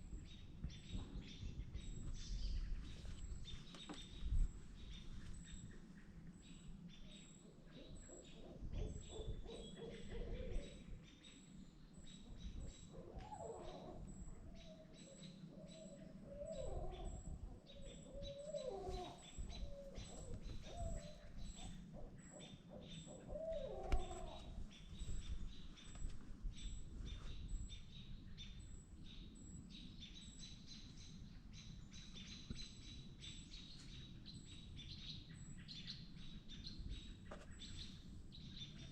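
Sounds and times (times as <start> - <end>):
small birds chipping: 0.0 - 7.4
owls hooting: 16.3 - 17.2, 17.8 - 24.6.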